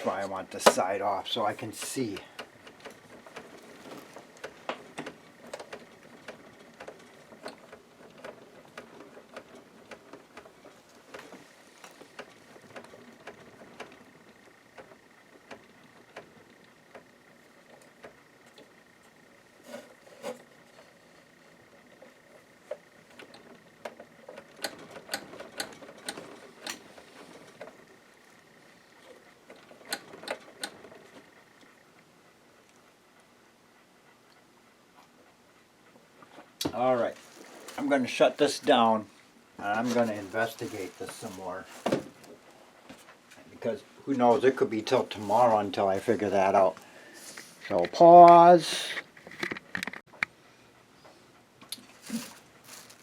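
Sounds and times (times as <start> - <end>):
mechanism clicks and knocks: 22.0 - 27.9, 29.0 - 31.3.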